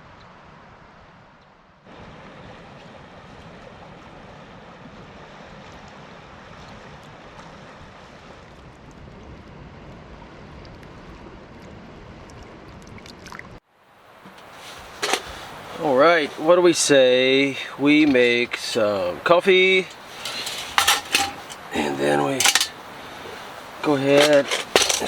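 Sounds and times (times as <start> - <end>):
river water rushing: 14.3 - 25.0.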